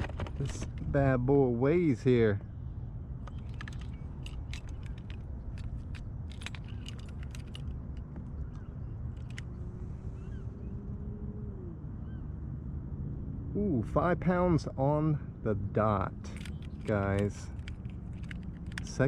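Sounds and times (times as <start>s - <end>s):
wind rumble: 0.0s - 19.0s
metal fish grips clicking: 3.3s - 9.6s, 16.3s - 19.0s.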